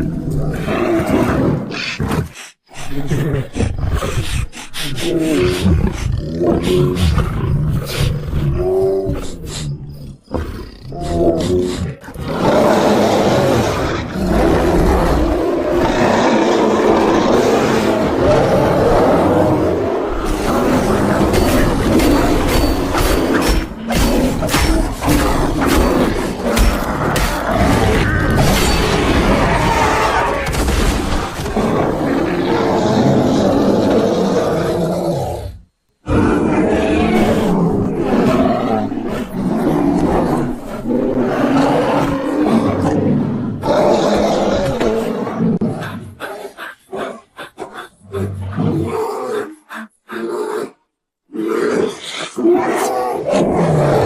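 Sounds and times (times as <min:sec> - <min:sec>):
bending growl-like sounds: 0:00.0 - 0:54.0
polar bear roaring: 0:10.2 - 0:30.7, 0:31.3 - 0:54.0.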